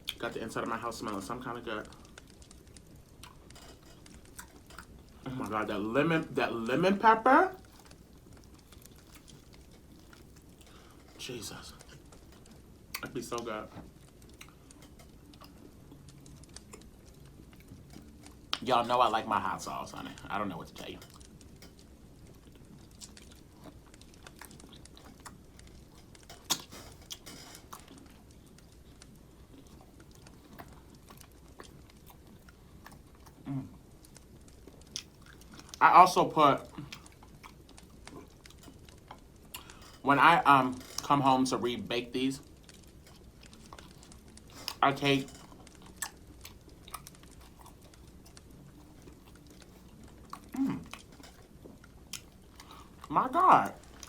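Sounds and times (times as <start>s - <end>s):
person chewing food: 1.8s - 5.6s, 7.6s - 18.6s, 21.0s - 35.8s, 36.6s - 40.0s, 42.4s - 54.0s.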